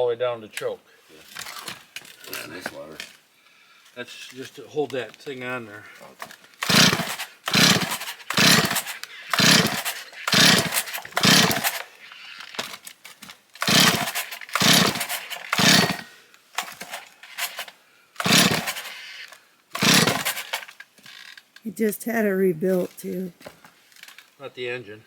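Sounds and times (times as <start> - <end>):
chainsaw starter cord rasps: 0.6 - 3.2, 6.1 - 21.7, 23.9 - 24.4.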